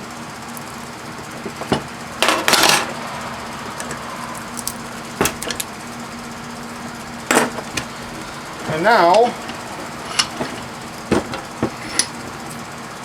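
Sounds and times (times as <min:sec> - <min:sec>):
scraping rattle: 0:01.1 - 0:13.0
metal clanks in a vise: 0:01.4 - 0:03.0, 0:04.8 - 0:05.8, 0:06.4 - 0:12.7.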